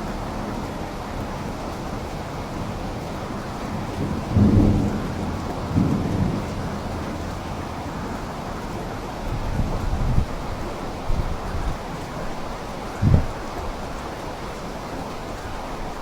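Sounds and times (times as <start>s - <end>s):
steady rainfall: 0.0s - 16.0s
thunder rumbling: 3.7s - 8.2s, 13.0s - 13.8s.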